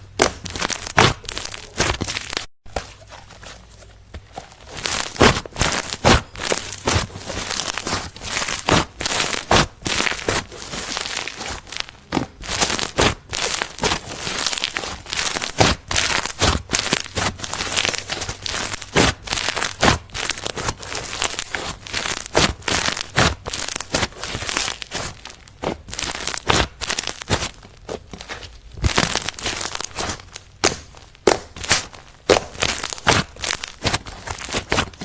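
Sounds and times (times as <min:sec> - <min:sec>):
hands squishing slime: 0:00.2 - 0:35.0.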